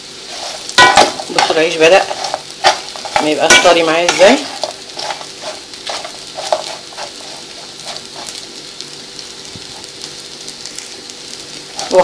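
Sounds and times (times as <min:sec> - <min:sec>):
flatbread sizzling in ghee: 0:00.0 - 0:12.0.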